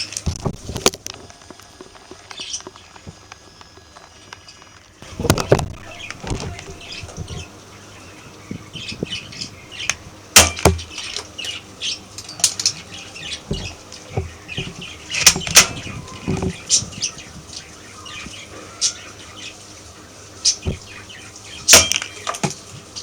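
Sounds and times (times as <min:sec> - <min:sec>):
rustling: 0:00.0 - 0:23.0.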